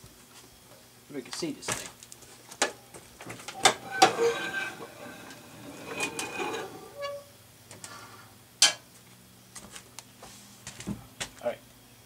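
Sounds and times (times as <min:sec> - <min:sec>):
short squeak: 0:03.6 - 0:07.3.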